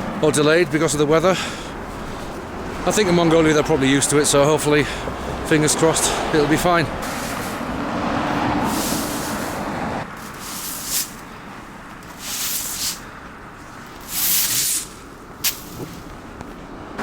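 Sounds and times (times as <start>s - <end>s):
passing vehicle: 0.0s - 17.0s
broom sweeping snow: 7.0s - 11.3s, 12.0s - 16.1s.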